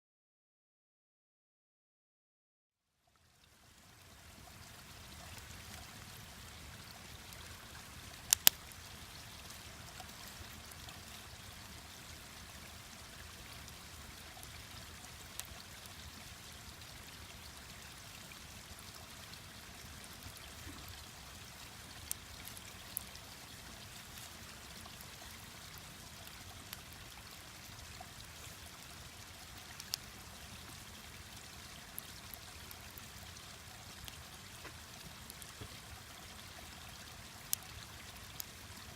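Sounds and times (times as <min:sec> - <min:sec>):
stream running: 0:03.0 - 0:38.9
campfire popping and cracking: 0:08.1 - 0:08.8, 0:22.0 - 0:25.0.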